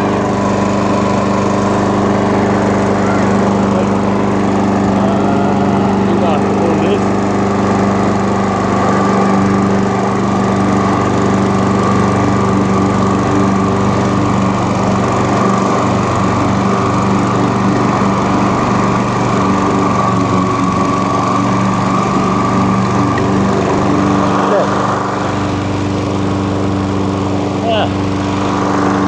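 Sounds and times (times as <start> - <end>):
lawnmower engine running: 0.0 - 29.0.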